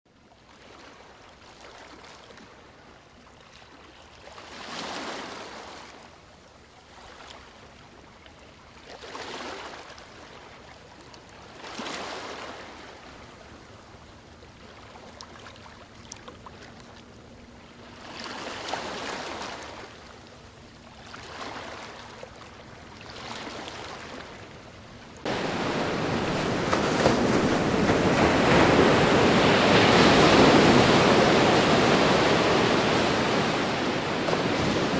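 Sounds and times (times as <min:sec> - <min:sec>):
rush of water: 0:25.2 - 0:34.9
sea waves washing onto shore: 0:25.2 - 0:34.9.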